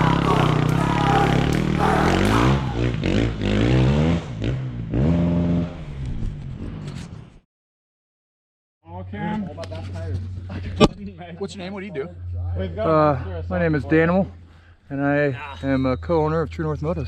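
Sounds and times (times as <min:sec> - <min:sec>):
dirt bike engines revving: 0:00.0 - 0:06.0.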